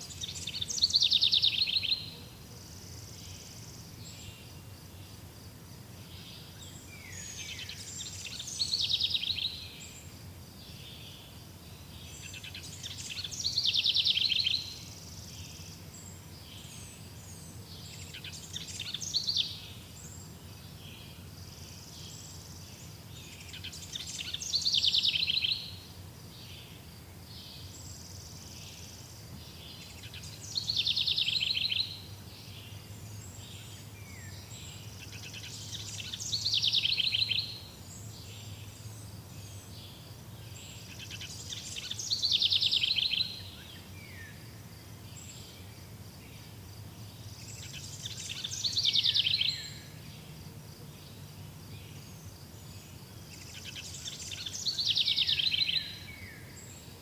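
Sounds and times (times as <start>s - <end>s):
songbird trilling: 0.0s - 2.2s, 12.2s - 15.6s, 17.9s - 19.8s, 23.5s - 25.8s, 29.8s - 32.1s, 33.5s - 37.7s, 40.7s - 44.4s, 47.4s - 50.0s, 53.3s - 56.5s.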